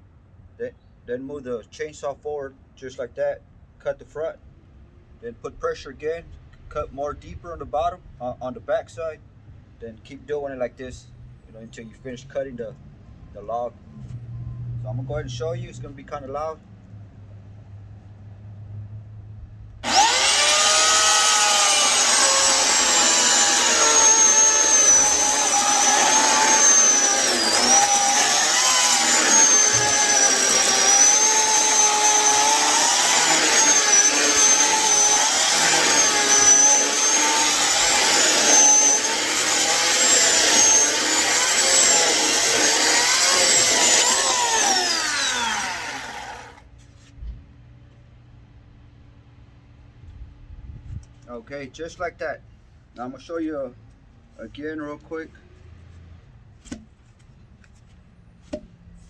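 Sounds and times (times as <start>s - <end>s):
electric chainsaw cutting log: 19.8s - 46.6s.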